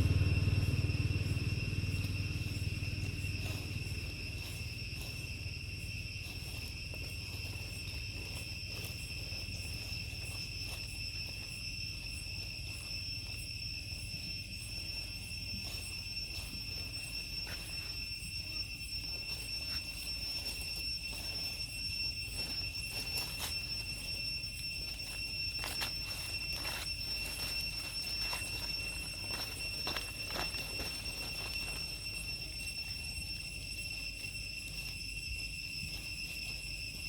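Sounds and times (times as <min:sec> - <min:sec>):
low vehicle rumble: 0:00.0 - 0:07.6, 0:24.8 - 0:33.0
insects droning: 0:00.0 - 0:37.0.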